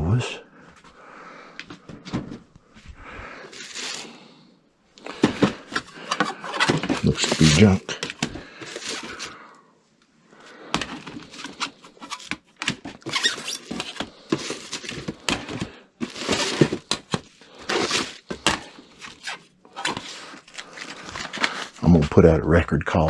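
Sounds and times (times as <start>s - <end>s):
paper sleeves rustling: 3.4s - 4.2s, 5.1s - 9.4s, 17.5s - 22.1s.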